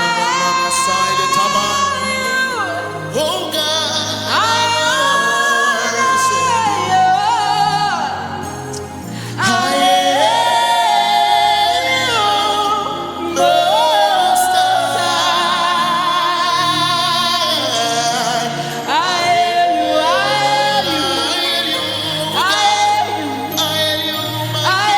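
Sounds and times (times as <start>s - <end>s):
person singing long wavering notes: 9.4s - 24.9s.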